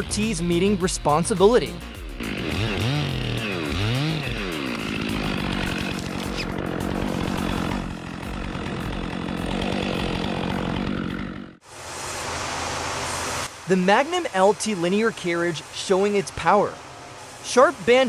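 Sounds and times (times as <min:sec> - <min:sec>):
chainsaw revving: 0:00.0 - 0:00.8, 0:02.1 - 0:11.6.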